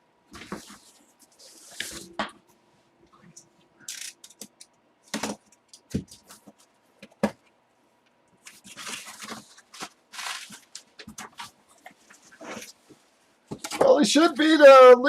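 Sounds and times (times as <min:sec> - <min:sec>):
packaging rustling and scraping: 0:08.4 - 0:13.0.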